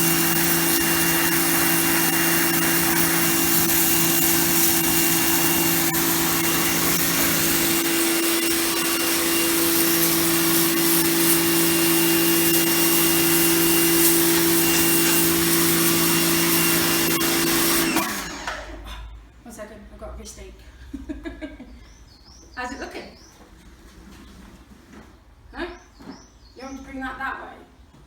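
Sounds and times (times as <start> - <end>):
pressure washer motor humming: 0.0 - 18.8.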